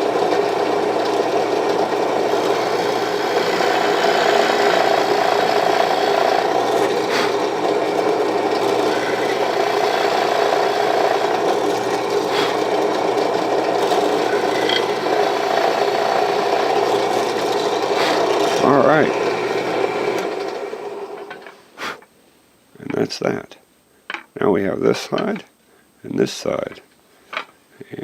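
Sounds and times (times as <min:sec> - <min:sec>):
power drill boring into wood: 0:00.0 - 0:21.5.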